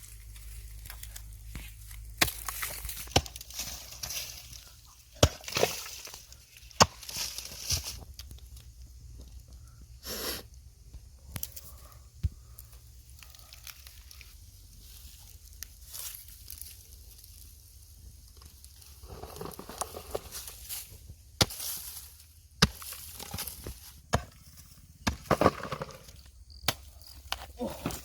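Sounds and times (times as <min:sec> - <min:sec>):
hands digging in earth and mud: 0:00.0 - 0:09.1.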